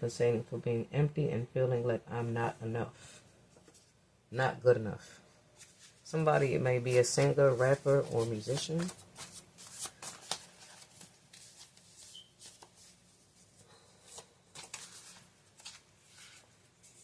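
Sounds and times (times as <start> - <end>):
cards rustling and clicking: 7.9 - 13.0, 14.0 - 17.0.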